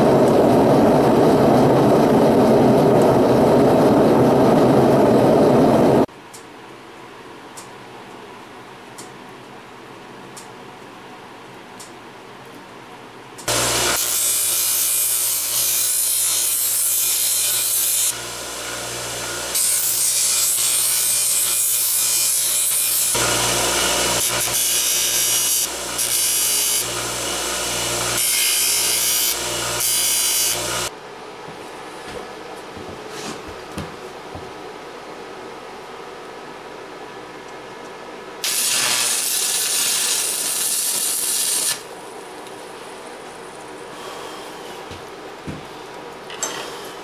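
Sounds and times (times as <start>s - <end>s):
power tool cutting metal: 13.5s - 30.9s, 38.4s - 41.9s.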